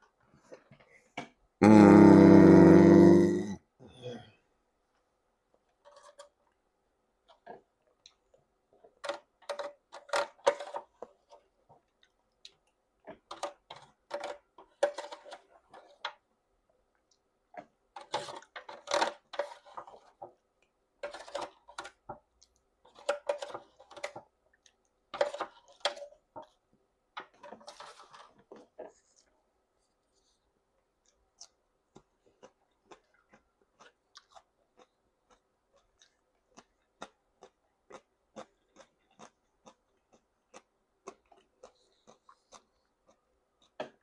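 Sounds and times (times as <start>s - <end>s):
wet chewing and lip smacking: 31.0s - 43.8s.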